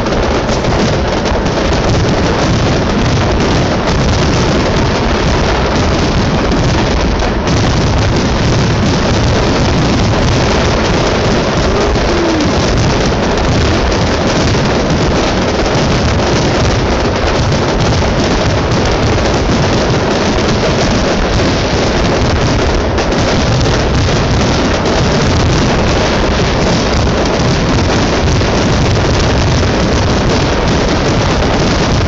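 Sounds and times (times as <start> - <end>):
fireworks barrage rumbling: 0.0 - 32.0.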